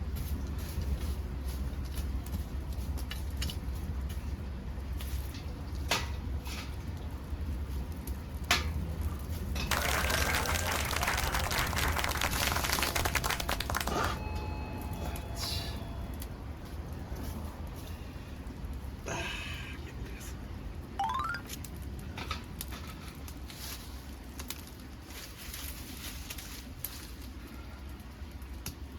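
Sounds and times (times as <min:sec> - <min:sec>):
low stove rumble: 0:00.0 - 0:19.7, 0:21.8 - 0:28.9
wood crackling and popping: 0:01.6 - 0:14.2, 0:21.5 - 0:28.9.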